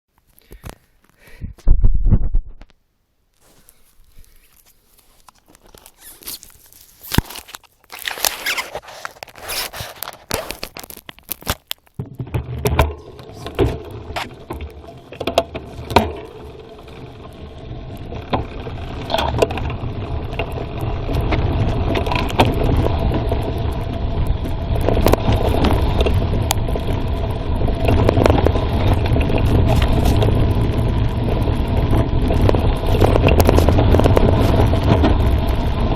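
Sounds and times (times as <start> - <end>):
wind on microphone: 1.4 - 2.6, 18.1 - 35.9
bike rattles and clicks: 3.4 - 35.9
bike tyres rumbling: 3.4 - 35.9.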